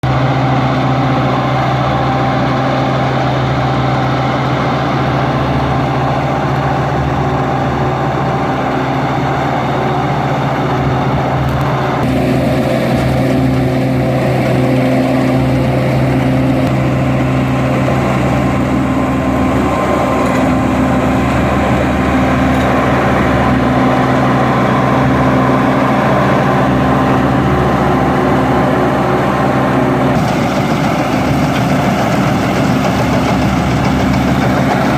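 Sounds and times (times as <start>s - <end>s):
combine harvester engine running: 0.0s - 34.9s.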